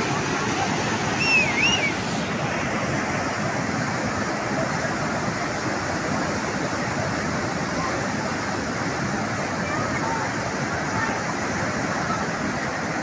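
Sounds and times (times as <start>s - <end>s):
flood water rushing: 0.0s - 13.0s
warbling whistle: 1.2s - 2.0s.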